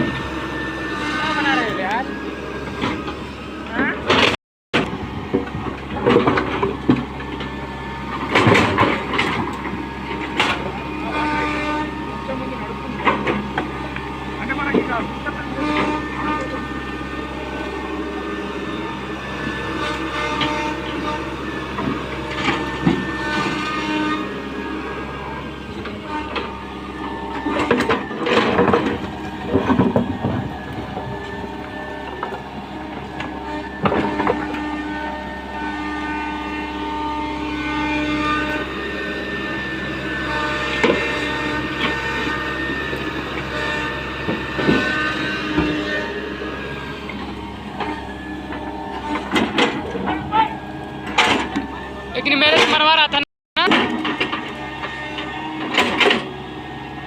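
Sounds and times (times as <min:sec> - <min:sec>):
engine running: 0:00.0 - 0:57.0
steady whining tones: 0:00.0 - 0:57.0
clattering and scraping: 0:27.3 - 0:32.5, 0:46.7 - 0:50.3, 0:51.0 - 0:51.7.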